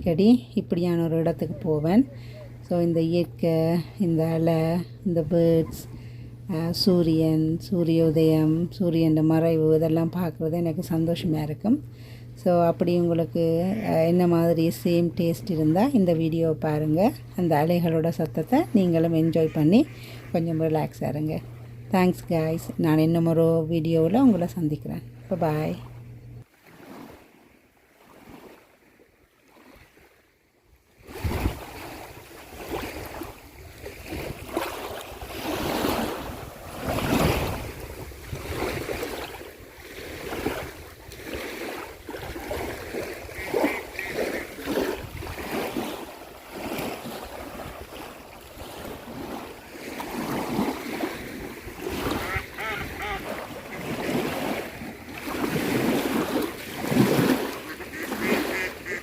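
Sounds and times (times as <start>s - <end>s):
waves washing onto shore: 31.0s - 59.0s
wind buffeting microphone: 36.1s - 39.2s, 44.7s - 45.6s.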